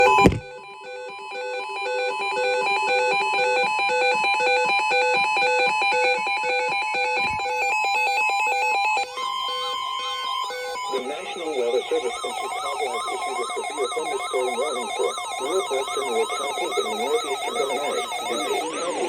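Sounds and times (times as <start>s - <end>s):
steady high tone: 6.5s - 7.7s, 9.0s - 19.0s.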